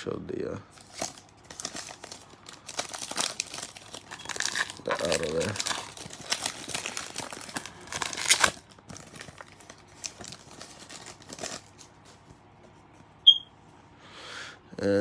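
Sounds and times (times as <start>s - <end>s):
foil wrappers crinkling: 0.7s - 12.4s
cards being handled: 0.7s - 13.1s
high-pitched chirp: 13.3s - 13.5s.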